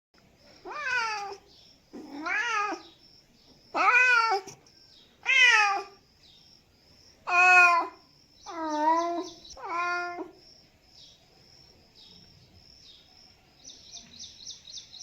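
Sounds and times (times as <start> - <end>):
cat meowing: 0.6 - 1.4, 2.0 - 2.9, 3.7 - 4.5, 5.2 - 6.0, 7.3 - 10.4.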